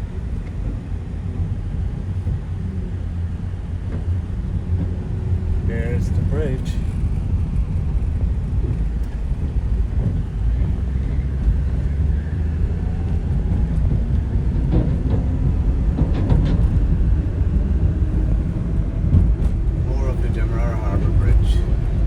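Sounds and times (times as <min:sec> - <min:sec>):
car road and engine rumble: 0:00.0 - 0:22.0.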